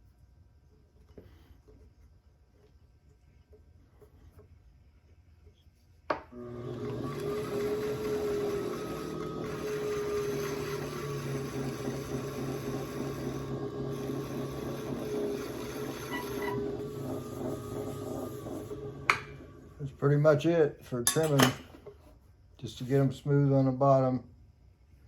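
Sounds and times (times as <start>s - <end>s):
tool scraping clay: 0.7s - 20.5s
pottery wheel humming: 0.8s - 23.8s.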